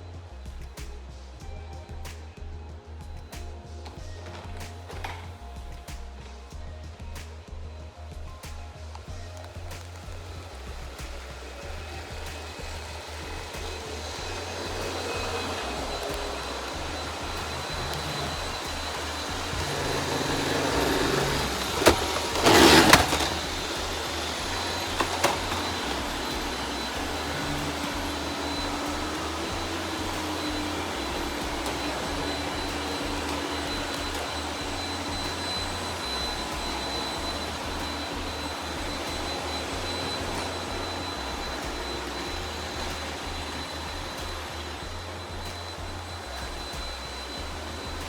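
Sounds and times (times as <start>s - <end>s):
robot vacuum whirring: 3.1s - 6.0s, 8.9s - 48.0s.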